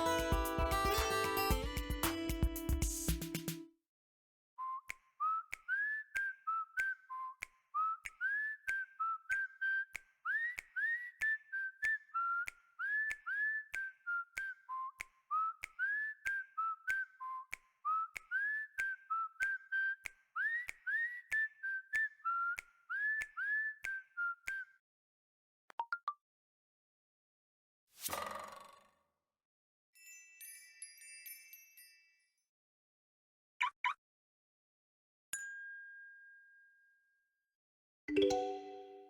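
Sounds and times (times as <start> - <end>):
steady ticking beat: 0.0 - 3.6.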